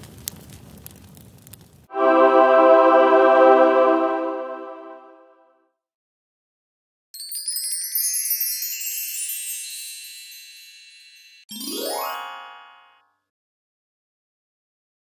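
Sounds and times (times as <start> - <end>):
rising glissando effect: 1.9 - 5.5, 11.5 - 13.0
twinkling chime: 7.2 - 13.0.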